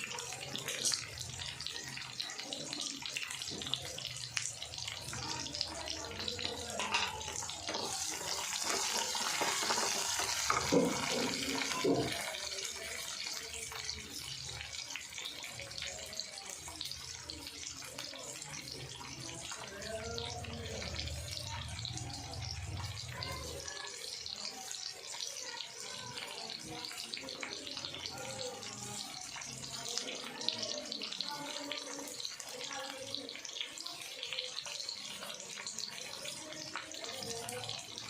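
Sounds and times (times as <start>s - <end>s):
tap water running into sink: 5.0s - 14.4s.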